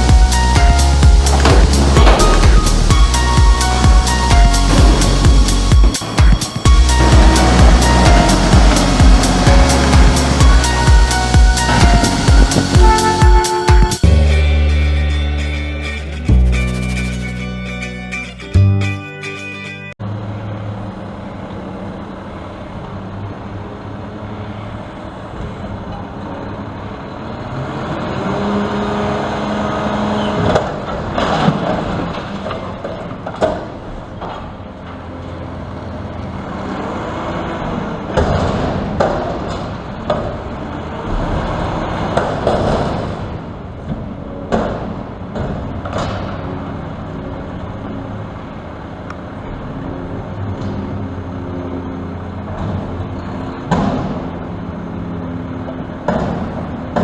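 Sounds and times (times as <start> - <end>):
diesel engine revving: 0.0 - 5.9, 6.6 - 17.1, 20.0 - 31.4
sharp bangs and clanks: 0.0 - 15.4.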